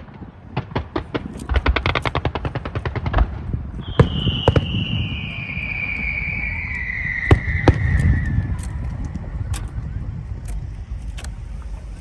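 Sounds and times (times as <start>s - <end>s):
firework bangs: 0.0s - 10.7s
whistling firework: 0.0s - 12.0s
low rumble: 2.6s - 12.0s.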